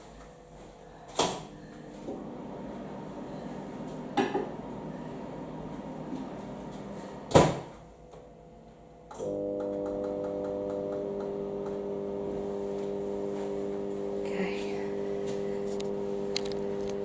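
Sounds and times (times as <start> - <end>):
microwave oven humming: 0.3 - 17.0
microwave door banging shut: 7.3 - 7.7.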